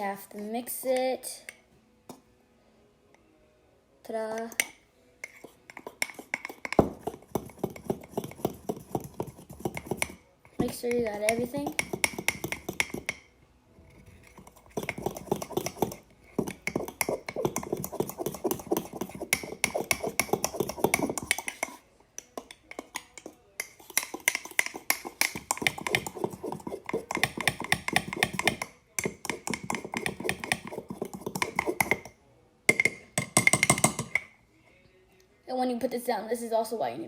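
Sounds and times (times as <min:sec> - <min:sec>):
fork clinking and scraping cup: 0:04.6 - 0:13.3, 0:13.9 - 0:32.1.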